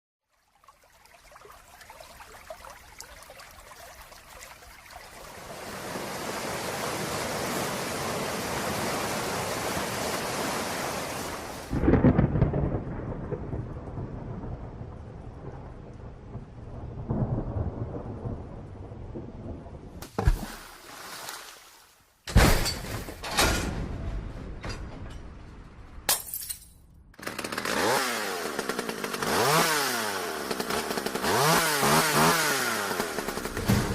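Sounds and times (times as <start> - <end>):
rain downpour: 0.4 - 20.0, 27.4 - 33.9
thunderclap with rolling rumbles: 11.7 - 20.0, 23.4 - 26.1, 33.4 - 33.9.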